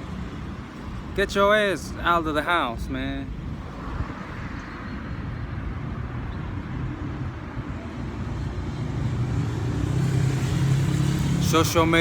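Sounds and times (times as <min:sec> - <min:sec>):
vehicle engine humming: 0:03.3 - 0:12.0.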